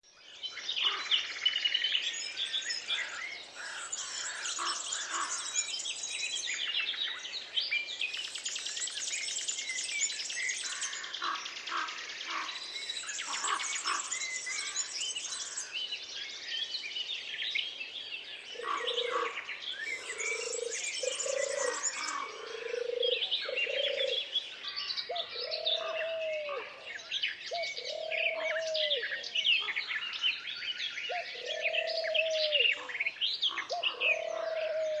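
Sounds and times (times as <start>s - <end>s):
songbirds chirping and trilling: 0.0s - 35.0s
low repeating bird call: 18.6s - 24.3s, 33.5s - 35.0s.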